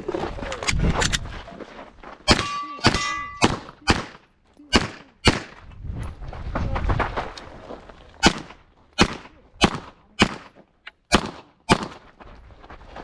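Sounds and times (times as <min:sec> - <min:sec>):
metallic ring of steel targets: 0:02.3 - 0:03.8
pistol shots: 0:02.3 - 0:05.6, 0:08.2 - 0:12.0.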